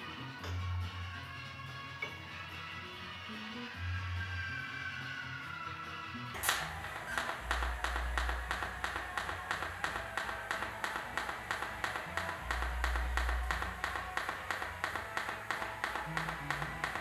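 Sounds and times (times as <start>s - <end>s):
welding arc ticking: 6.4s - 17.0s.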